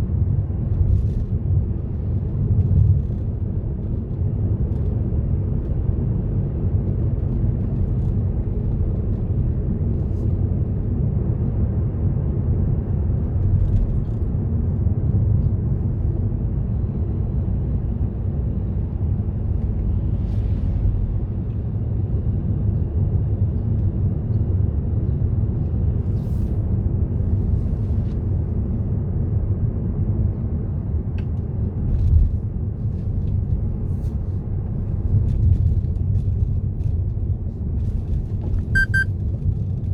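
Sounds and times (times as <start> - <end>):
car driving rumble: 31.3 - 39.9.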